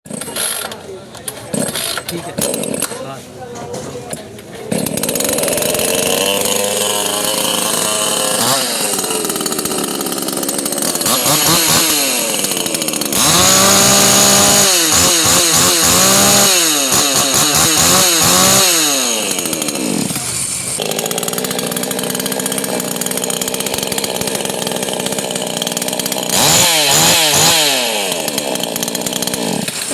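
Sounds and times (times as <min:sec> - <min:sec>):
chainsaw engine revving: 0:00.1 - 0:03.2, 0:03.8 - 0:29.9.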